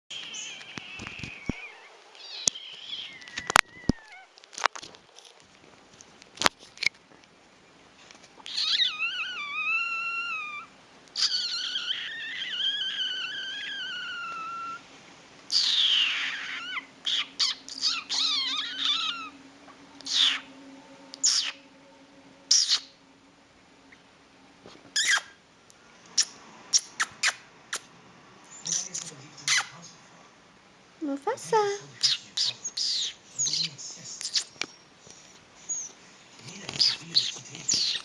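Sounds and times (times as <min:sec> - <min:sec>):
pet animal wavering cries: 0:00.1 - 0:04.4, 0:08.4 - 0:23.0, 0:35.6 - 0:36.0.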